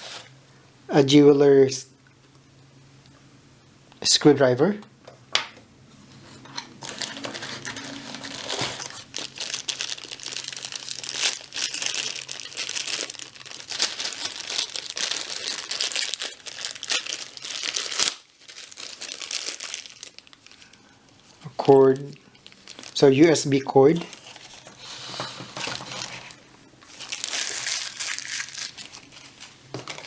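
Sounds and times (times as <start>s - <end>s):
packaging crinkling and rustling: 6.2s - 30.0s.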